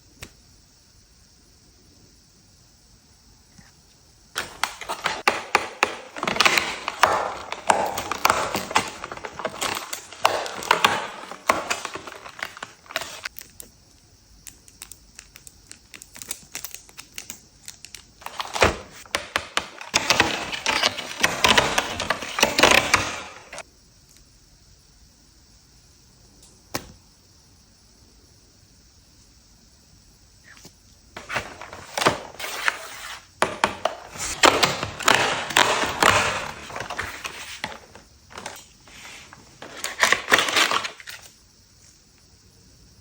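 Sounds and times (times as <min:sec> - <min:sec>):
cardboard crackling and tearing: 0:04.4 - 0:13.3, 0:19.7 - 0:23.6.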